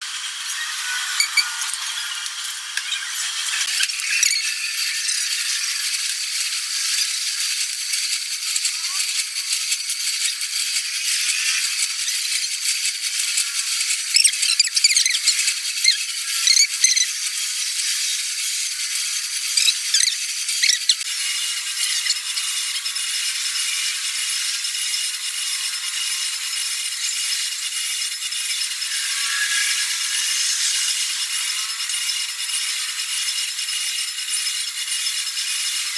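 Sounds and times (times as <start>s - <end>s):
metalworking tool hiss: 0.0s - 9.4s, 28.3s - 34.0s.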